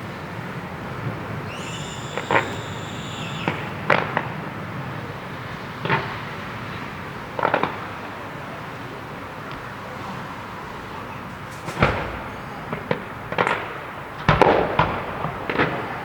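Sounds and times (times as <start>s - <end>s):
firework bangs: 0.8s - 8.8s, 11.5s - 16.0s
firework crackle: 0.9s - 8.1s
firework whistle: 1.0s - 5.5s.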